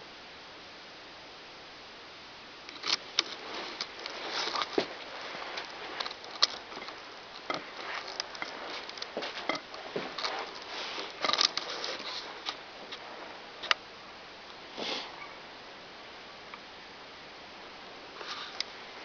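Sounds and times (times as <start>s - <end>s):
faint steady hiss: 0.0s - 19.0s
rustling: 2.6s - 13.9s, 17.9s - 19.0s.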